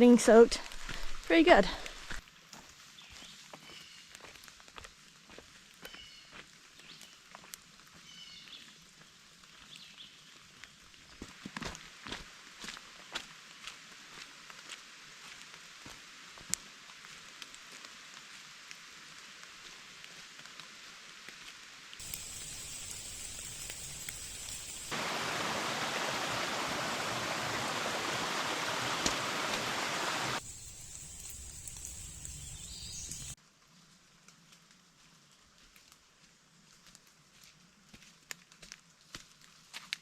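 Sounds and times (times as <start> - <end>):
rain falling on forest: 0.0 - 40.0
water drips: 22.0 - 33.4.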